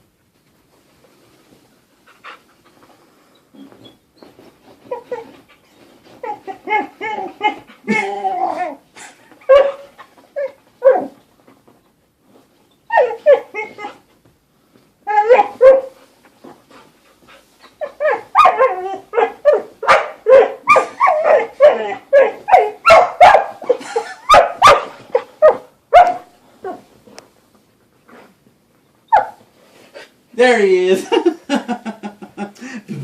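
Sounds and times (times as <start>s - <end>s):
dog whining: 3.4s - 11.2s, 12.7s - 14.1s, 15.0s - 16.0s, 17.6s - 26.9s
dog barking: 9.5s - 9.9s, 15.3s - 15.9s, 18.4s - 23.6s, 24.3s - 26.3s, 29.1s - 29.4s.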